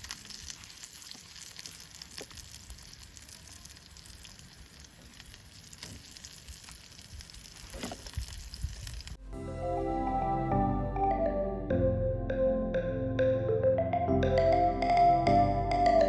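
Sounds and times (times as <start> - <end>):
food sizzling in oil: 0.0 - 9.2.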